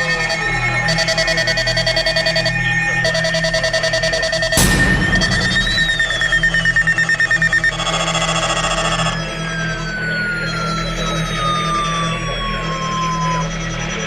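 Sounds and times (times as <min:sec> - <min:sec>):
sudden bang: 0:04.6 - 0:06.7.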